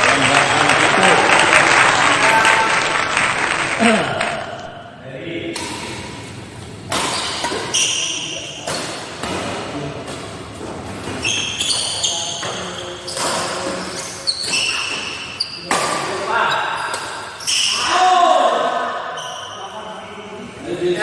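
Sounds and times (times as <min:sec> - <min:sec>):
racket hitting shuttlecock: 0:06.9 - 0:08.0
shoe squeaks on court floor: 0:07.0 - 0:08.8, 0:11.1 - 0:18.0, 0:19.2 - 0:19.6.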